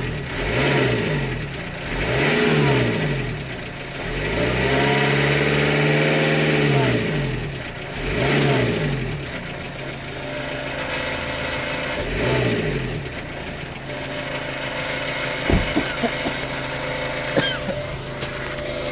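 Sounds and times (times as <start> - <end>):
diesel engine idling and revving: 0.0 - 18.9
short engine knocks: 15.4 - 16.5.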